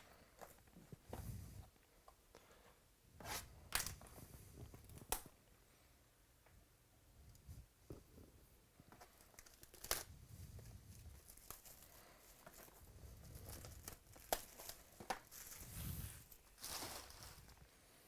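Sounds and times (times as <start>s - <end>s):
wrapper rustling: 9.0s - 17.9s
card wrappers being torn: 9.2s - 10.1s, 11.0s - 17.6s.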